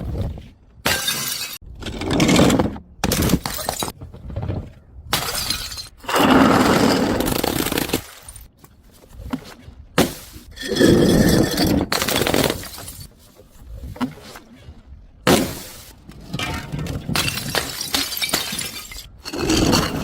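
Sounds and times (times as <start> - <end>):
glass bottles smashing: 0.9 - 1.6, 5.1 - 6.0, 10.7 - 13.1, 16.4 - 20.0.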